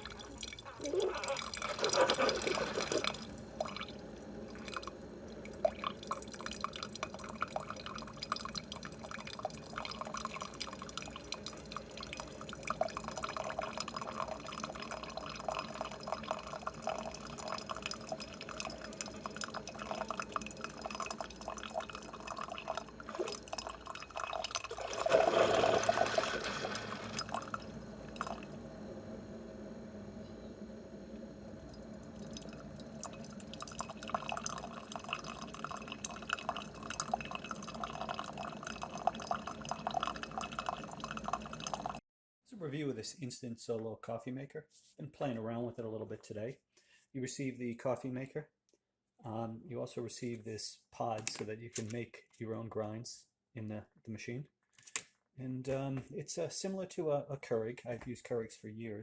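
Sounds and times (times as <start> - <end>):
coffee maker dripping into cup: 0.0 - 28.7, 31.1 - 42.0
coffee maker hissing and gurgling: 0.0 - 42.0.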